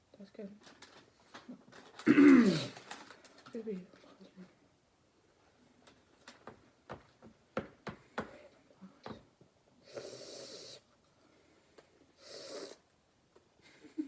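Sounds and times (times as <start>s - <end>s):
breathy puffs of air: 12.2s - 12.8s.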